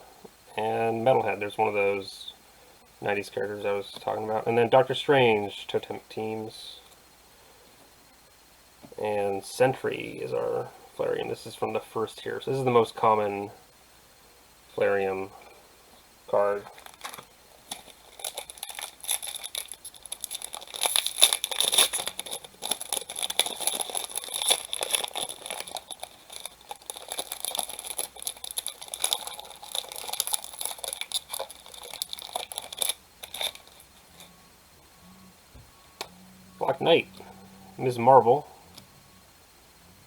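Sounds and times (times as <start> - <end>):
wrapper tearing and crinkling: 16.6 - 34.4.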